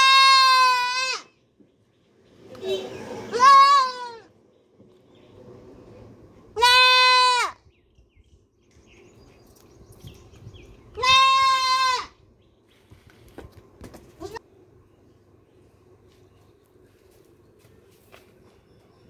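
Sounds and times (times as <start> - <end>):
baby goat bleating: 0.0 - 1.3, 3.3 - 4.3, 6.6 - 7.6, 11.0 - 12.2, 14.2 - 14.4.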